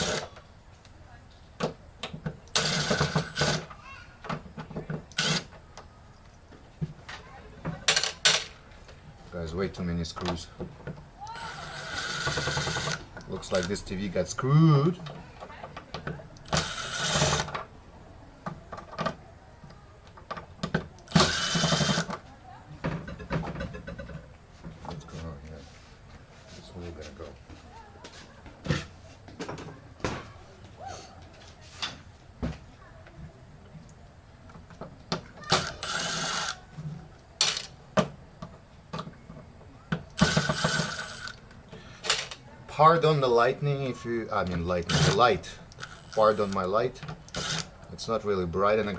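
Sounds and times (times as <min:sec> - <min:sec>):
power screwdriver whirring: 0:00.0 - 0:00.3, 0:02.5 - 0:03.7, 0:05.1 - 0:05.5, 0:11.4 - 0:13.7, 0:16.4 - 0:17.5, 0:21.1 - 0:22.2, 0:35.5 - 0:36.6, 0:40.2 - 0:41.4, 0:44.9 - 0:46.6, 0:47.3 - 0:47.7.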